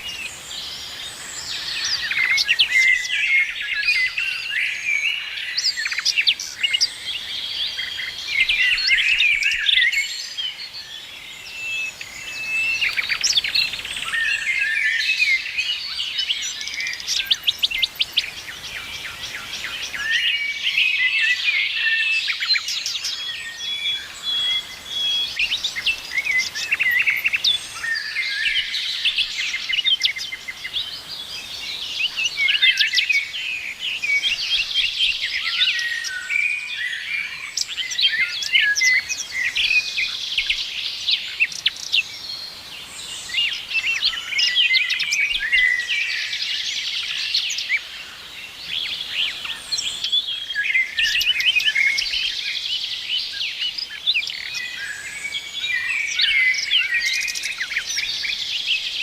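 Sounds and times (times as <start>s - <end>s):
songbirds chirping and singing: 0.0s - 59.0s.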